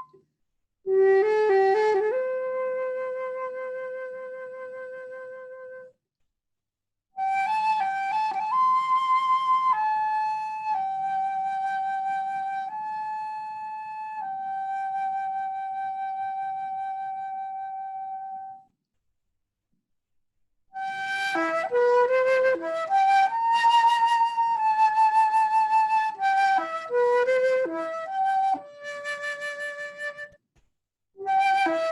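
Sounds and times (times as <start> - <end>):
solo instrumental melody: 7.2 - 18.7, 20.8 - 30.4, 31.2 - 31.9.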